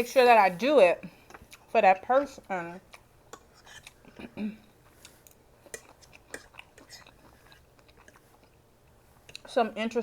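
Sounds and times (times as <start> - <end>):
chewing with wet mouth clicks: 1.2 - 1.7, 2.8 - 9.6.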